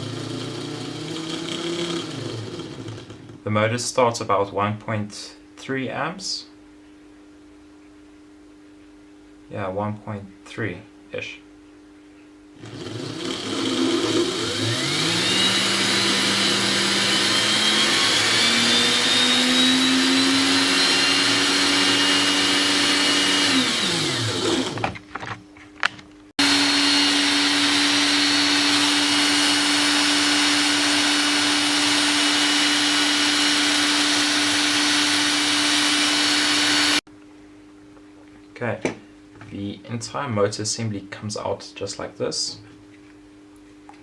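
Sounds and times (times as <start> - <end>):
drill motor whining: 0.0 - 3.4, 12.6 - 25.0, 26.4 - 37.0.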